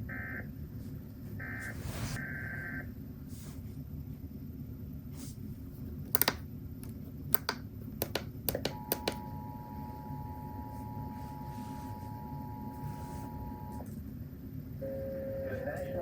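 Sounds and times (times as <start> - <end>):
sharp clicks: 6.1 - 9.2
low radio hiss: 8.7 - 13.9.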